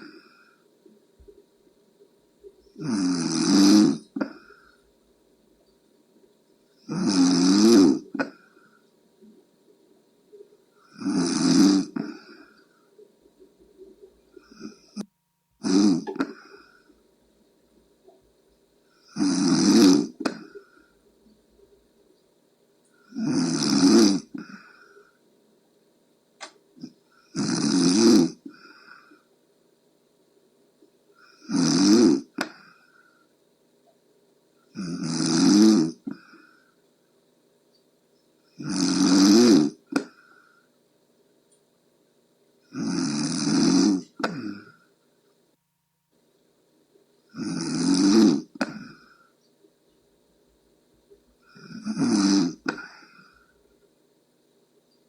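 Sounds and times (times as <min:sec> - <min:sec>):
person snoring: 0:00.0 - 0:00.6, 0:02.6 - 0:04.8, 0:06.8 - 0:08.8, 0:10.7 - 0:12.9, 0:14.3 - 0:17.0, 0:18.9 - 0:21.0, 0:22.9 - 0:25.2, 0:26.8 - 0:29.3, 0:31.2 - 0:33.2, 0:34.7 - 0:36.8, 0:38.5 - 0:40.7, 0:42.7 - 0:44.9, 0:47.3 - 0:49.4, 0:51.4 - 0:53.6.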